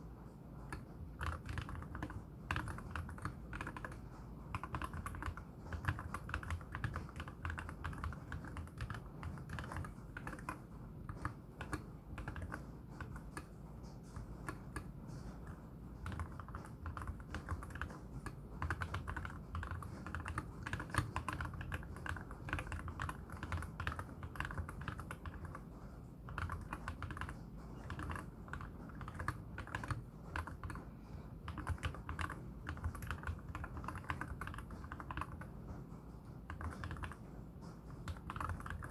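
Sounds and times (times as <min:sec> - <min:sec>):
fast typing on mechanical keyboard: 0:00.6 - 0:38.9.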